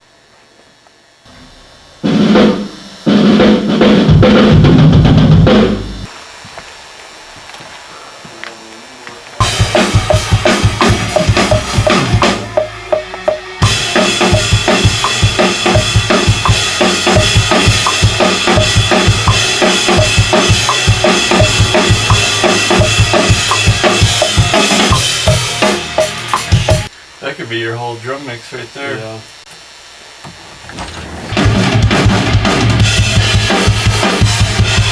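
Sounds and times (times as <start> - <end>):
cymbals crashing: 1.3 - 30.1
kick drum and snare hits: 9.4 - 26.9.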